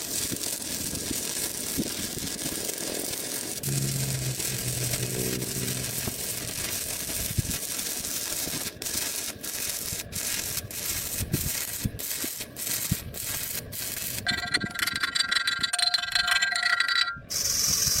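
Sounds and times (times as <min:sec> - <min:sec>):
welding crackling hiss: 0:00.0 - 0:15.7, 0:17.3 - 0:18.0
high ringing tones: 0:03.6 - 0:06.7, 0:14.2 - 0:17.3
abrasive grinding on metal: 0:03.6 - 0:07.9, 0:13.7 - 0:17.3.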